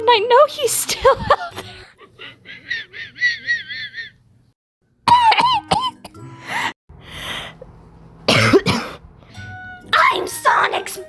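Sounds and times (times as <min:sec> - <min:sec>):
breathy gasps: 0:06.4 - 0:07.6.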